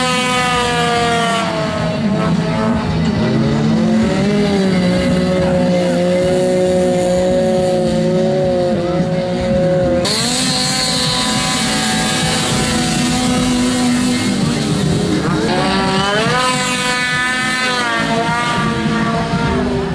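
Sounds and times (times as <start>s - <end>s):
off-road vehicle engine revving: 0.0s - 19.9s.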